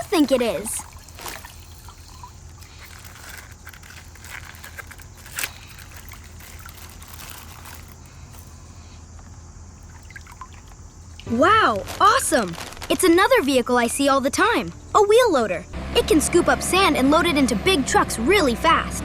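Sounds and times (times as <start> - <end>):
water trickling: 0.0 - 8.0, 9.7 - 13.0
low steady hum: 0.0 - 19.0
plastic bag crackles: 1.0 - 8.6, 11.3 - 13.5.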